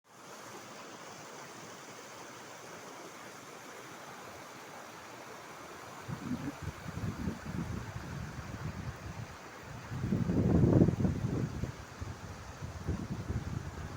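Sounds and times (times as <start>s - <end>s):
wind buffeting microphone: 6.0s - 13.9s.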